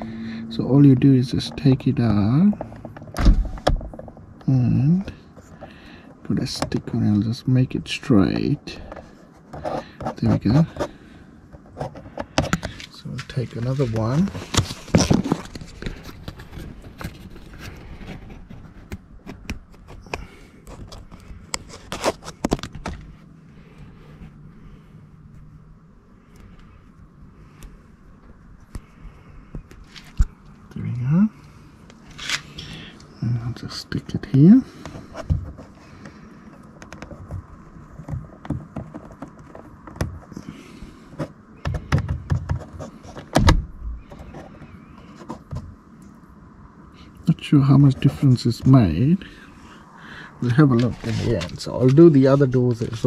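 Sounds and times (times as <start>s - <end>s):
sticker peeling clicks and scrapes: 11.6s - 23.1s.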